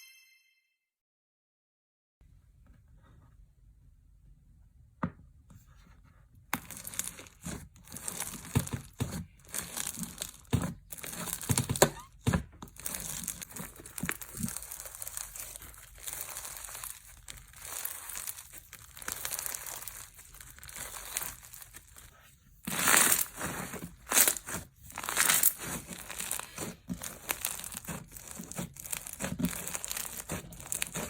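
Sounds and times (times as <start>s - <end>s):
slime crackling and popping: 6.6s - 31.0s.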